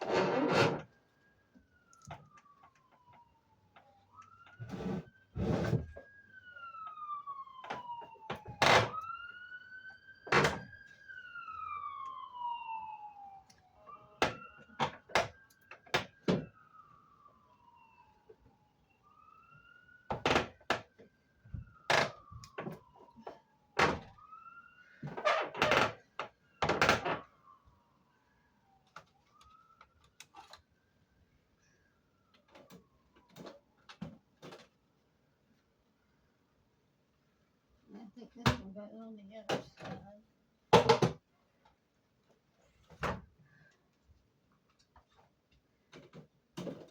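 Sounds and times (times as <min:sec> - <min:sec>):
siren wailing: 0:00.2 - 0:34.0.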